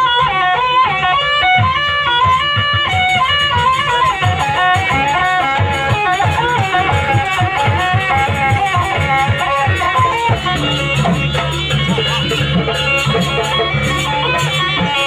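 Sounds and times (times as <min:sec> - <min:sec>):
fast drum beats: 0:00.0 - 0:15.0
wavering ornamented melody: 0:03.2 - 0:15.0.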